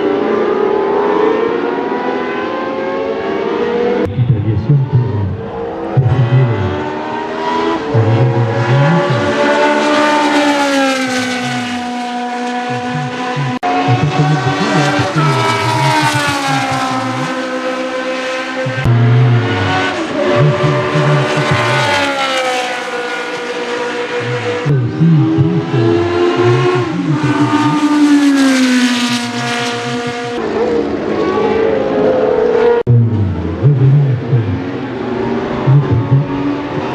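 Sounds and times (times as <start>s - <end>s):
race car engine passing at high revs: 0.0s - 36.9s.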